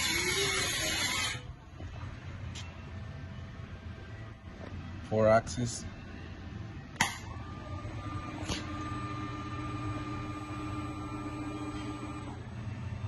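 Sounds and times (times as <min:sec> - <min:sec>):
machine low hum: 0:05.8 - 0:13.0
servo whine: 0:07.3 - 0:13.0.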